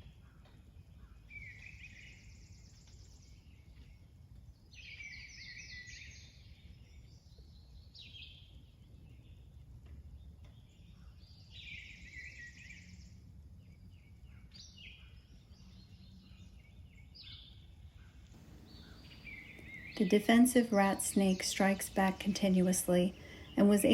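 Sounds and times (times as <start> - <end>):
songbirds chirping: 0.0 - 23.9
low outdoor rumble: 18.3 - 23.9.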